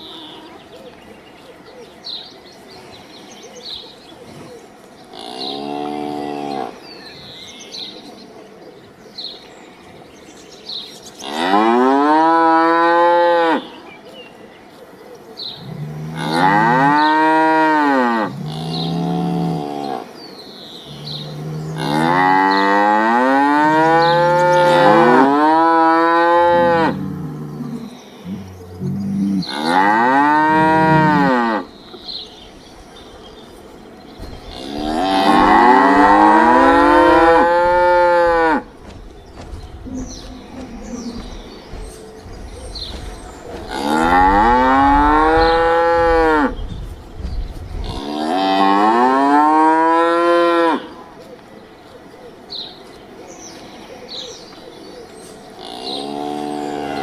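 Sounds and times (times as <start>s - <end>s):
cattle mooing: 20.9s - 31.7s, 34.4s - 38.7s, 42.8s - 46.5s.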